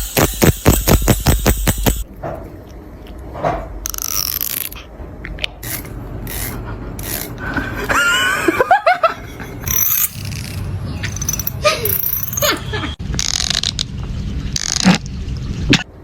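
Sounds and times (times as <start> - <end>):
comb teeth rasping: 5.6 - 7.4.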